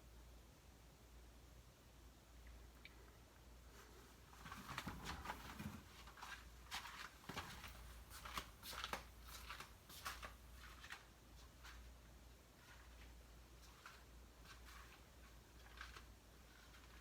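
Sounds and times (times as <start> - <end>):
low steady hum: 0.0 - 17.0
faint rustling: 3.6 - 17.0.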